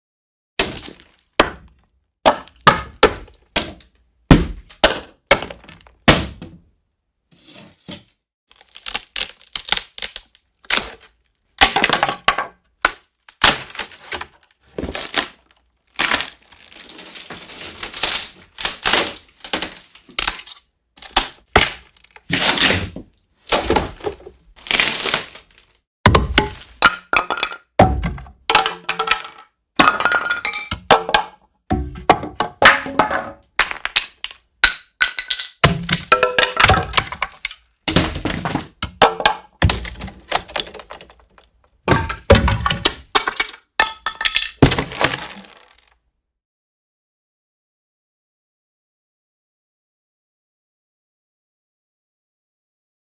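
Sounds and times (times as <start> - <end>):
wood breaking and snapping: 0.6 - 6.4, 8.5 - 45.8
sharp wood hits: 2.3 - 6.6, 21.0 - 45.7
wood pieces clattering: 8.6 - 45.9.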